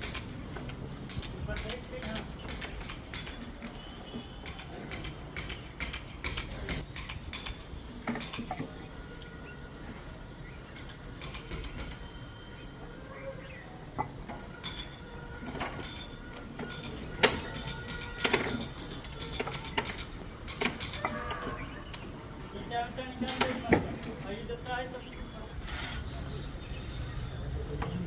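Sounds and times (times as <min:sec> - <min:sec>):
mechanical clicking and creaking: 0:00.0 - 0:09.3, 0:10.8 - 0:12.2, 0:14.2 - 0:22.0.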